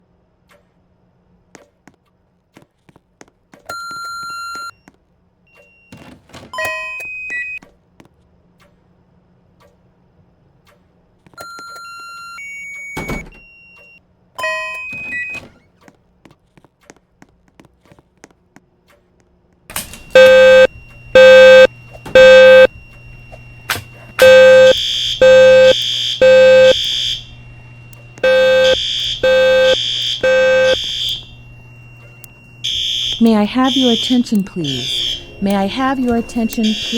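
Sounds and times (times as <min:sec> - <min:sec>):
low-pitched fire alarm tone: 0:19.7 - 0:36.9
short electronic beeps and chirps: 0:20.1 - 0:22.7, 0:23.7 - 0:27.2, 0:28.2 - 0:36.9.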